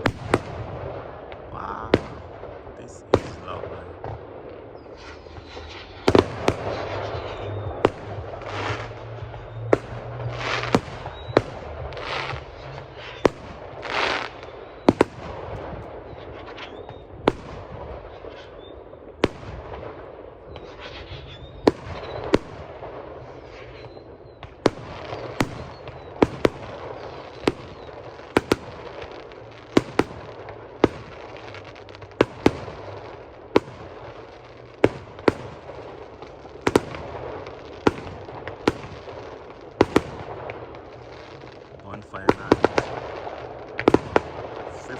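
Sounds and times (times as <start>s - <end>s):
fireworks bangs and cracks: 0.0s - 44.9s
fireworks hissing rushes: 1.5s - 4.2s, 4.8s - 14.6s, 34.0s - 44.9s.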